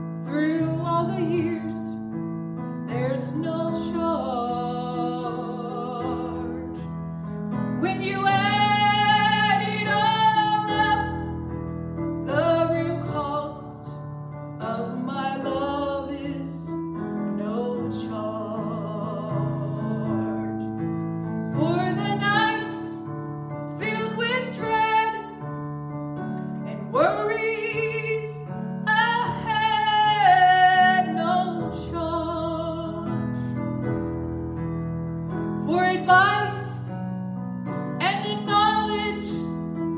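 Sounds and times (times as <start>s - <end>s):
piano accompaniment: 0.0s - 39.9s
person singing slow song: 2.9s - 7.0s, 14.6s - 20.8s.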